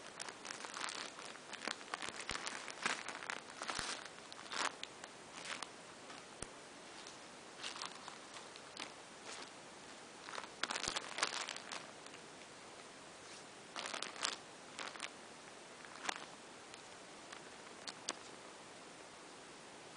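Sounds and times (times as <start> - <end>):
packaging crinkling and rustling: 0.0 - 6.3, 6.9 - 12.2, 13.3 - 15.1, 15.8 - 18.3.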